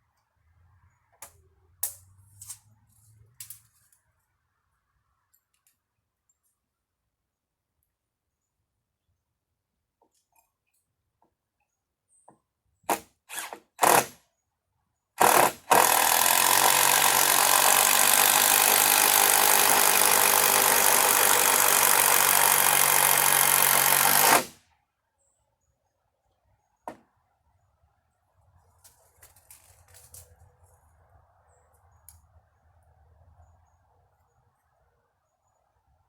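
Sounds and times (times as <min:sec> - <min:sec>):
power drill running: 0:13.3 - 0:14.1, 0:15.2 - 0:24.6.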